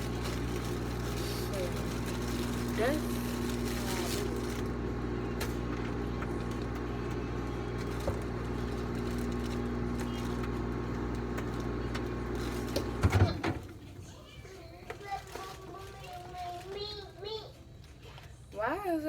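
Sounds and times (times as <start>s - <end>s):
microwave oven humming: 0.0s - 17.6s
microwave clunks: 4.8s - 13.8s.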